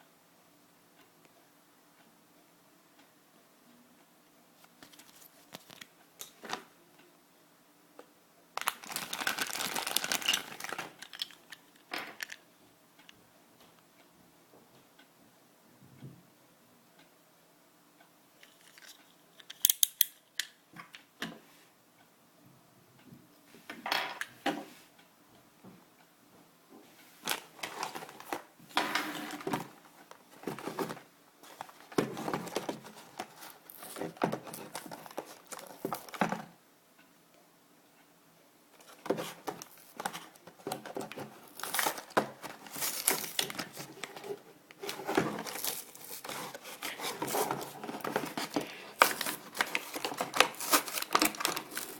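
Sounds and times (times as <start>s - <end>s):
cutting and tearing packaging: 39.2s - 44.1s, 44.8s - 51.9s.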